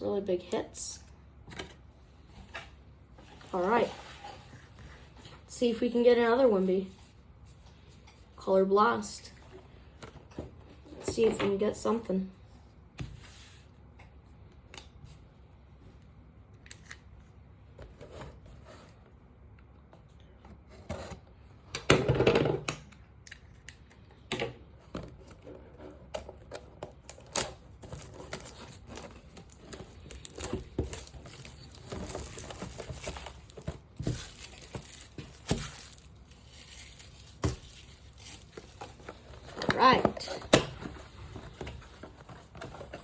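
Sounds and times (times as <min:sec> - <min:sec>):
wrapper crinkling: 0:27.2 - 0:40.3
wrapper ripping: 0:28.2 - 0:38.7.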